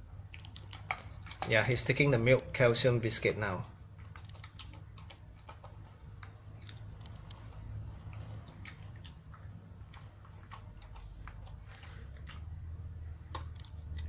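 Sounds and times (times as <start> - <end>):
dog crunching hard biscuit: 0.2 - 2.2, 3.8 - 12.5.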